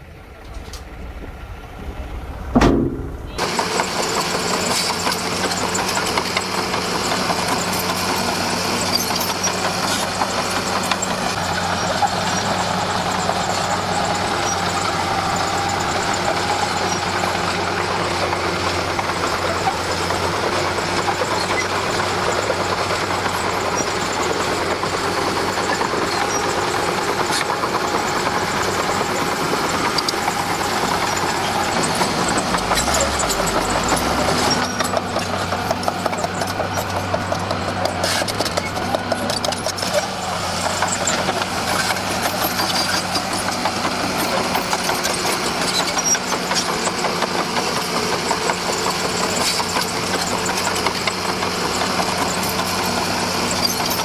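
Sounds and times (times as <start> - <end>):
bulldozer diesel engine running: 0.0 - 54.0
loud falling sound: 0.4 - 3.5.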